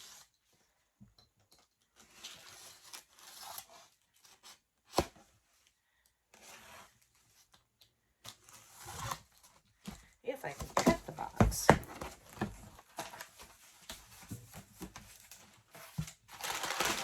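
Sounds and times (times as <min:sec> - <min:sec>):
tape and cardboard tearing: 0:02.0 - 0:05.3, 0:08.3 - 0:09.6
sharp knock on box: 0:10.6 - 0:12.6.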